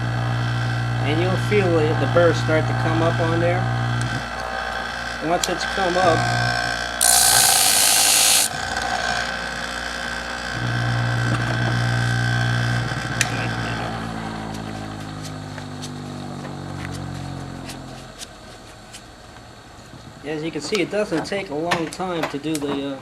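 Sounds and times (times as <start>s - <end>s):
electric motor humming: 7.0s - 8.6s.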